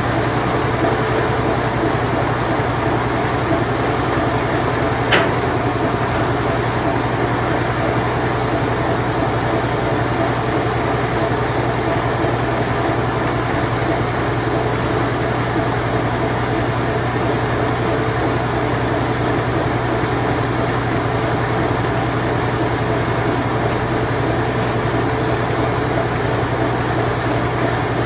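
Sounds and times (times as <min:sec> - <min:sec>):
washing machine spinning: 0:00.0 - 0:28.0
sharp click: 0:05.1 - 0:05.4.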